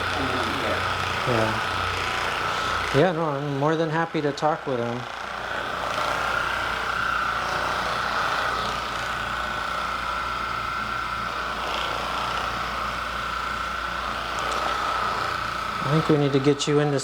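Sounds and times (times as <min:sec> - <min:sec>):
machine hum with high whine: 0:00.0 - 0:17.0.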